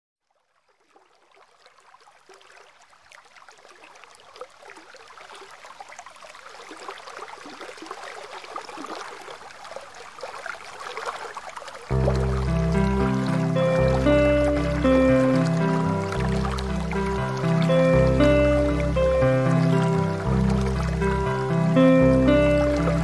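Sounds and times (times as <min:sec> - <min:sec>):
waterfall splashing: 0:11.9 - 0:23.0.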